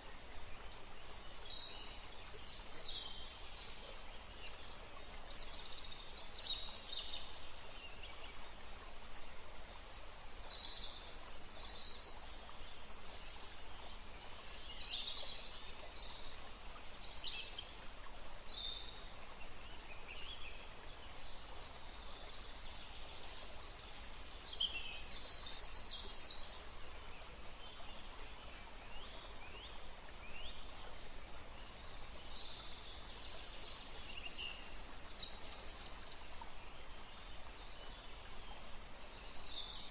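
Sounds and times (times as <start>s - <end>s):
steady background hiss: 0.0s - 39.9s.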